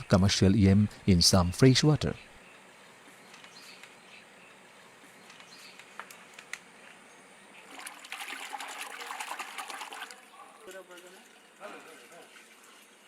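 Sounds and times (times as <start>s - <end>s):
water splashing and trickling: 7.6s - 13.0s.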